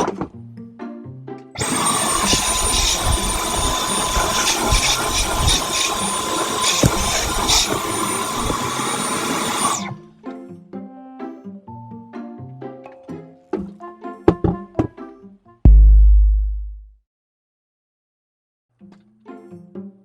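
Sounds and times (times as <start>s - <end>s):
vacuum cleaner motor whine: 1.6s - 10.0s.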